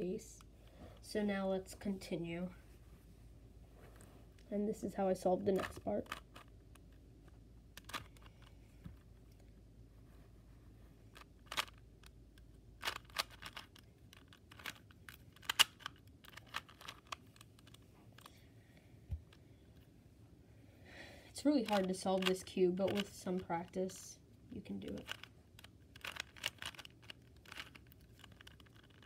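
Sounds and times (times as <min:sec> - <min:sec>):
puzzle cube plastic clicks: 0:05.4 - 0:07.0, 0:07.7 - 0:08.7, 0:11.1 - 0:18.4, 0:21.5 - 0:29.0.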